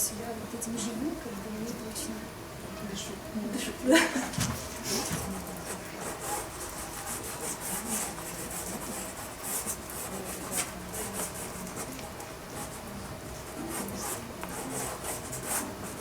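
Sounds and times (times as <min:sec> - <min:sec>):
pastel sticks scraping on paper: 0:04.9 - 0:12.8.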